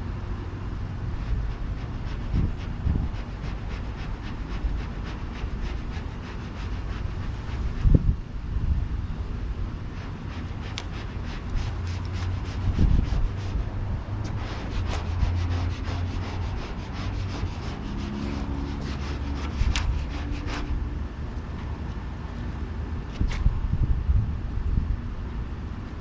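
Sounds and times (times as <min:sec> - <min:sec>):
wind rumble on microphone: 0:00.0 - 0:26.0
vinyl film rubbing and crackling: 0:01.1 - 0:08.0, 0:09.8 - 0:20.8.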